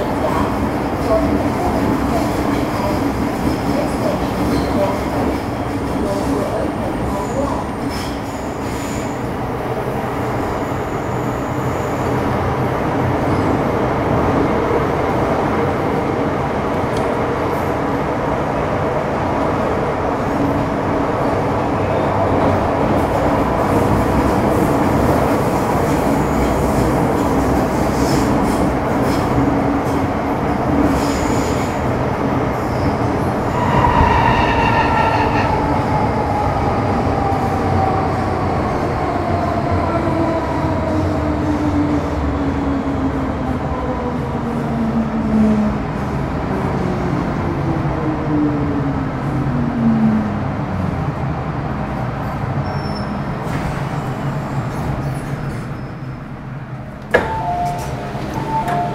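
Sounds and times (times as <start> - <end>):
train wheels rumbling: 20.4 - 42.3.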